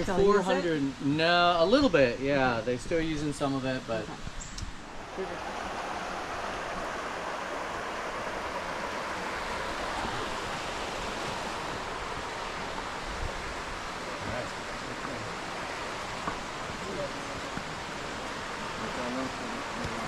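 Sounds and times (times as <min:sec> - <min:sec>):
water rushing in a ditch: 0:04.7 - 0:20.0.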